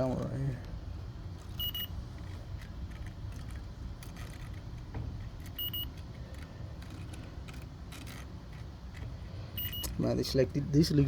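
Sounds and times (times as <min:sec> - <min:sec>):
leak detector ticking: 0:01.6 - 0:02.0, 0:05.5 - 0:06.0, 0:09.6 - 0:10.1
high double beep: 0:09.6 - 0:09.9.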